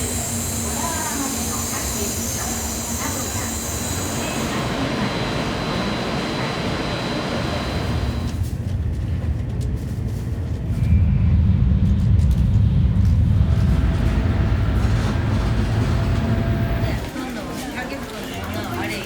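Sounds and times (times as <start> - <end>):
low vehicle rumble: 4.5 - 17.1.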